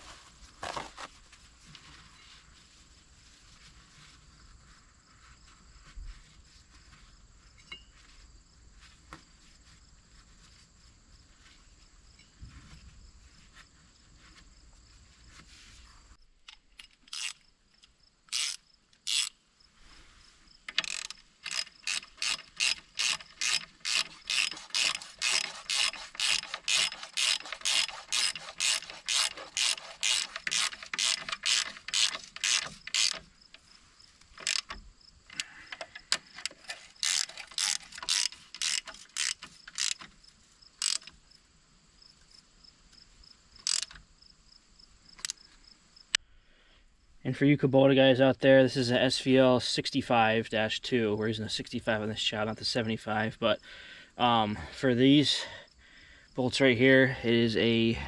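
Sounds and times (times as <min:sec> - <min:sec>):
ratchet wrench clicking: 0:16.8 - 0:17.4, 0:18.3 - 0:19.4, 0:20.7 - 0:33.3, 0:34.3 - 0:34.8, 0:35.4 - 0:40.1, 0:40.8 - 0:41.2, 0:43.6 - 0:44.0.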